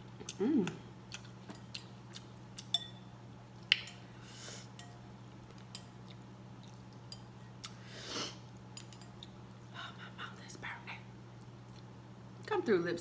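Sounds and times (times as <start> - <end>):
steady low hum: 0.0 - 13.0
chewing smacks: 0.2 - 2.7, 5.4 - 7.8.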